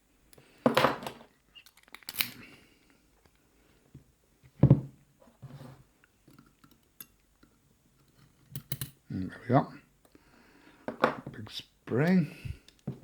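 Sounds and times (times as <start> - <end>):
metal padlock parts clicking: 1.5 - 2.4, 8.0 - 9.0.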